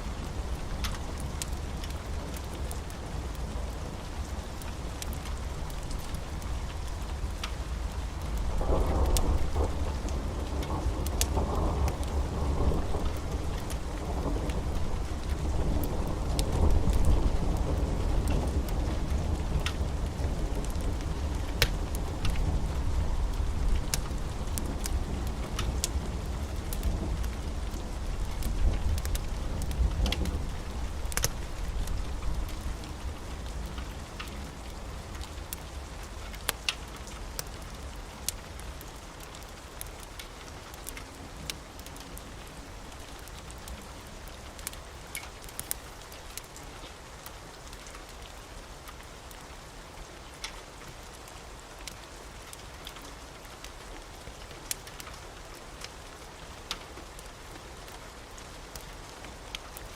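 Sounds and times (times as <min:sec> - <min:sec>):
steady rain: 0:00.0 - 0:59.9
low thunder rumble: 0:08.3 - 0:33.8.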